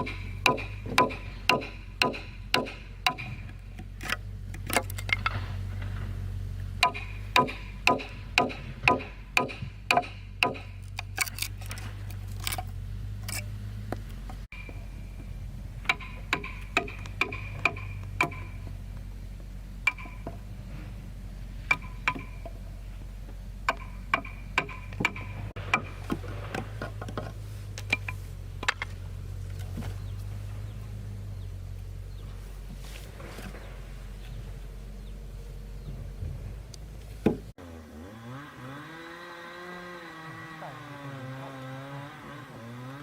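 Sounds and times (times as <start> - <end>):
hand tools knocking on wood: 0.0 - 3.6, 6.8 - 10.8, 15.9 - 18.8, 21.7 - 22.6, 23.7 - 27.3
steady low hum: 0.0 - 37.6.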